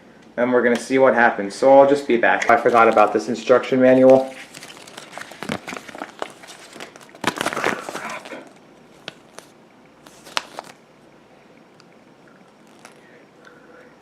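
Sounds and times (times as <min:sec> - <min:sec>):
paper crinkling and rustling: 0:02.4 - 0:10.8, 0:12.6 - 0:13.0.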